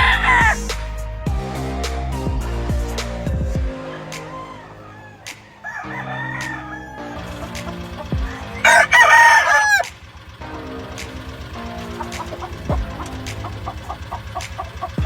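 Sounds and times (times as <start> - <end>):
rooster crowing: 3.9 - 7.4, 8.6 - 9.9.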